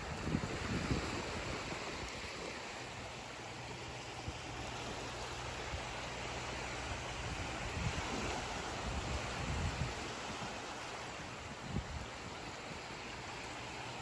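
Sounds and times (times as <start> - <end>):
water rushing: 0.0 - 14.0
wind: 0.0 - 14.0.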